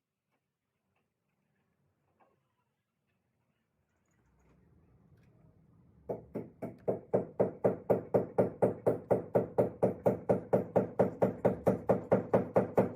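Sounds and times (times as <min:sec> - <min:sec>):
rapid knocking: 0:06.1 - 0:12.9.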